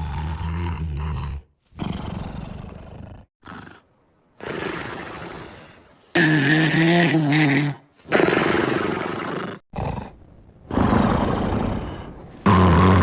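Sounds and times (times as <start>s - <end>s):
cartoon dog snoring: 0.0s - 8.3s.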